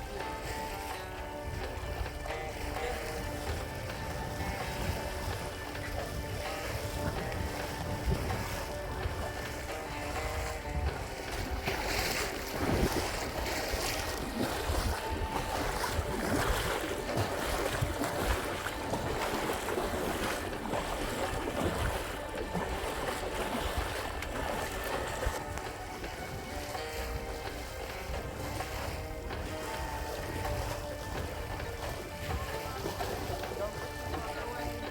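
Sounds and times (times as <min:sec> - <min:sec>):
background music with held notes: 0:00.0 - 0:34.9
sea water splashing: 0:00.0 - 0:34.9
wind buffeting microphone: 0:00.0 - 0:34.9.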